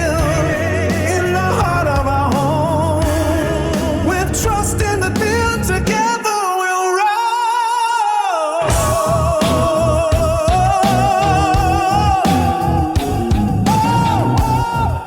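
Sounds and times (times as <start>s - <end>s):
bass and drums: 0.0s - 6.2s, 8.7s - 15.0s
person singing with vibrato: 0.0s - 15.0s.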